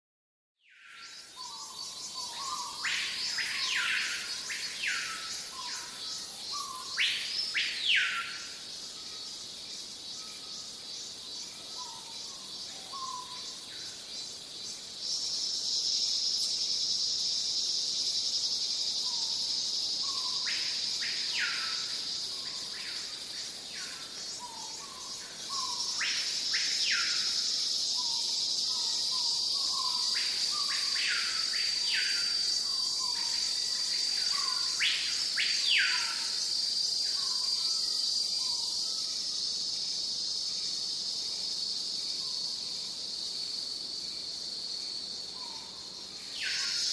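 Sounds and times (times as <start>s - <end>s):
high-pitched insect drone: 0.9s - 46.9s.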